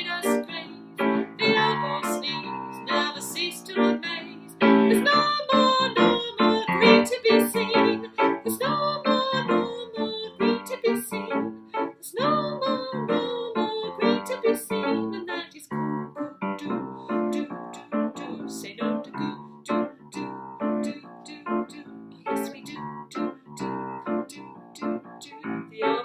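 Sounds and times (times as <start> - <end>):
piano chords: 0.0 - 26.0
woman singing: 0.0 - 26.0.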